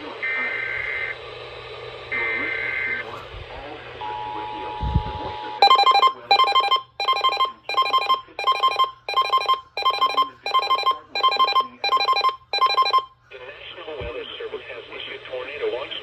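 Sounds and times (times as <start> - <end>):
electronic alert beeps: 5.6 - 13.1.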